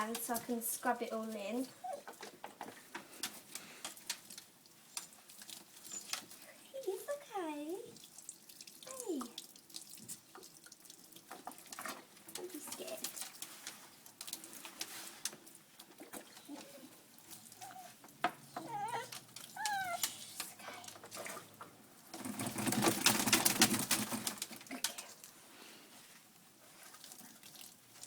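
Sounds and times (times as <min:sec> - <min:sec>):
dog whimpering and whining: 0:01.8 - 0:02.3, 0:16.2 - 0:20.8.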